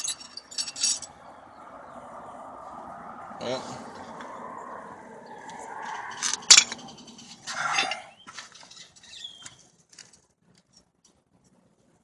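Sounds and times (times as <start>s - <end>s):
metallic clanks: 5.9s - 9.2s.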